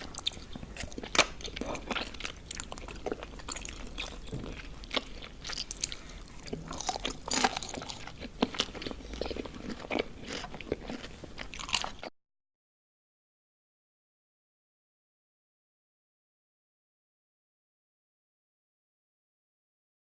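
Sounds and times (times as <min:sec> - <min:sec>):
chewing with wet crunches: 0:00.0 - 0:12.1.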